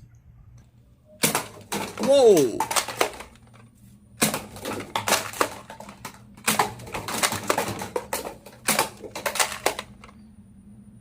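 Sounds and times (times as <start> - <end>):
plastic toy guns clicking: 1.2 - 3.6, 4.2 - 10.2.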